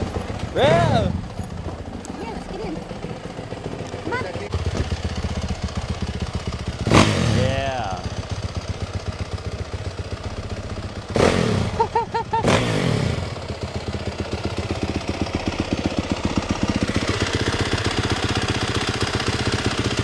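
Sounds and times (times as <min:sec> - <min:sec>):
motorcycle engine idling and revving: 0:00.0 - 0:20.0.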